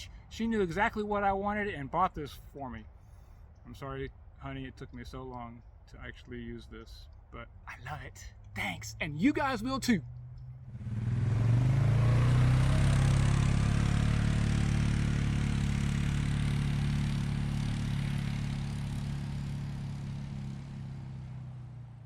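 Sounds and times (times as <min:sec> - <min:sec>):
engine running: 0:09.1 - 0:22.0.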